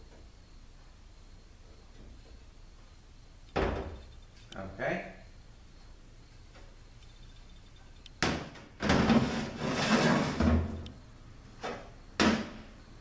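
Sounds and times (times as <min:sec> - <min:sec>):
tools rattling and scraping: 0:08.8 - 0:10.8.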